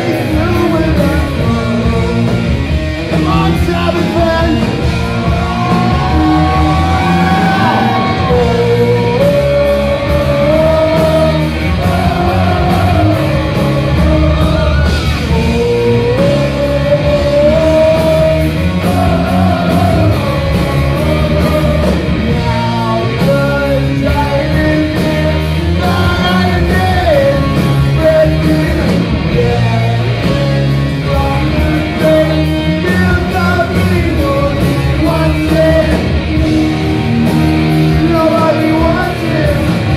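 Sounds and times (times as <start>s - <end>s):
rock song with vocals: 0.0s - 39.9s.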